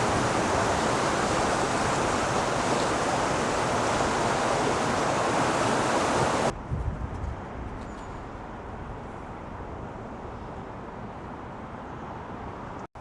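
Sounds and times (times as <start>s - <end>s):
river water rushing: 0.0s - 6.5s.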